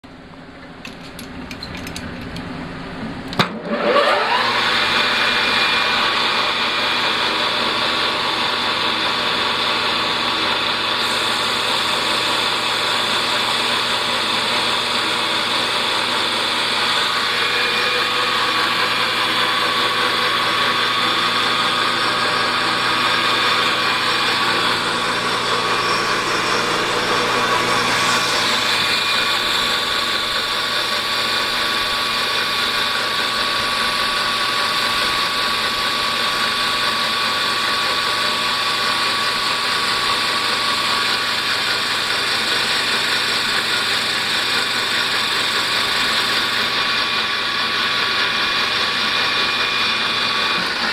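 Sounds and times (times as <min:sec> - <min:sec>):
metal lathe running with whine: 0:03.6 - 0:50.9.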